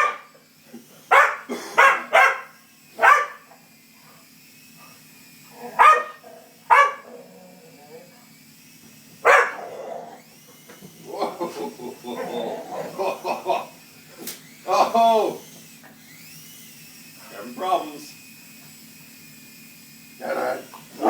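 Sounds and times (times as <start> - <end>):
small dog barking: 0.0 - 0.3, 1.1 - 3.5, 5.7 - 7.3, 9.2 - 9.8.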